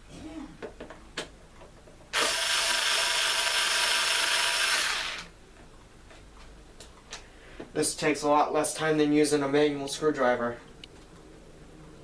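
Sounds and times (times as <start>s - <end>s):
power screwdriver running: 2.1s - 5.3s.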